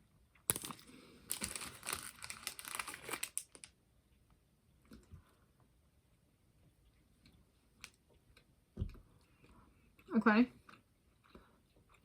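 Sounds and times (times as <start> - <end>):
wrapper tearing and crinkling: 0.5 - 3.7.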